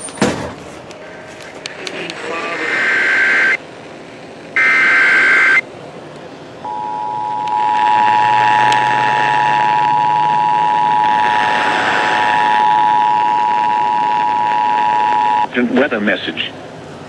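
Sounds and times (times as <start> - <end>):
two-tone attention signal: 6.7 - 11.4, 12.2 - 15.5.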